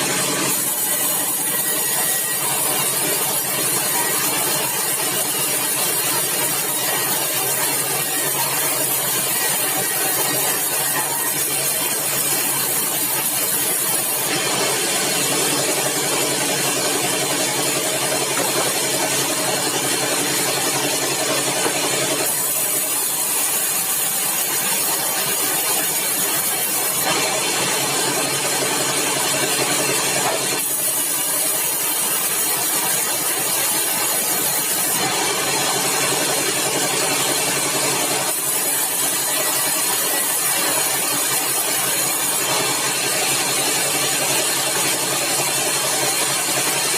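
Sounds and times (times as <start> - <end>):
sawmill machinery running: 0.0 - 46.9.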